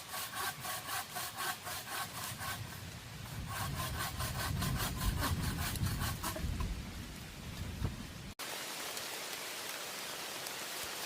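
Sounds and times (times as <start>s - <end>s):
rain hiss: 2.2s - 11.0s.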